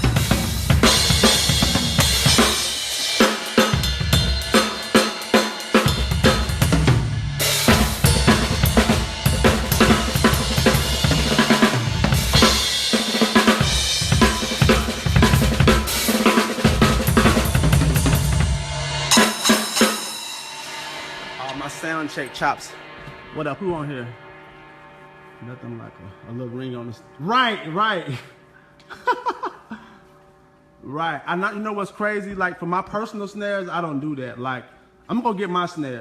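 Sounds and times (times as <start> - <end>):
bass drum: 0.0 - 3.1, 5.9 - 19.4
rapid snare drum strokes: 0.0 - 23.3
cymbal crashes: 0.0 - 27.1.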